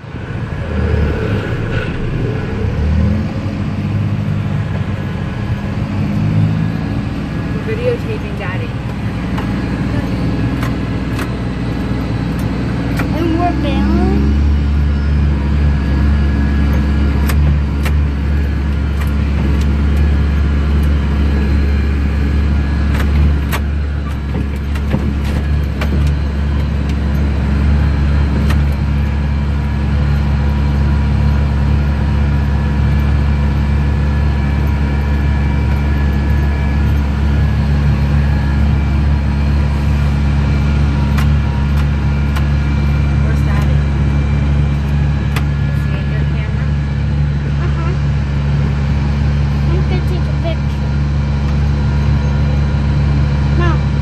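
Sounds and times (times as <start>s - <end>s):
tractor engine under load: 0.0s - 54.0s
sharp clicks and knocks: 22.9s - 27.3s.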